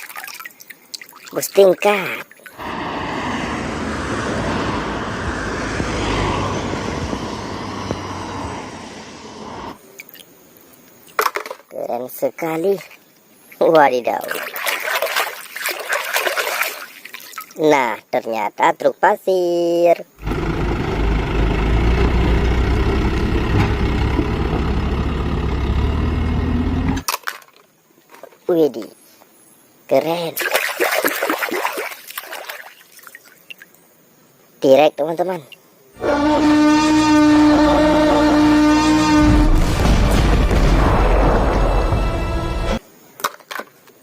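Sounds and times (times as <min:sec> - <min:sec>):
vehicle engine and road noise: 0:02.6 - 0:09.9, 0:20.1 - 0:27.1
truck engine idling: 0:20.2 - 0:27.0.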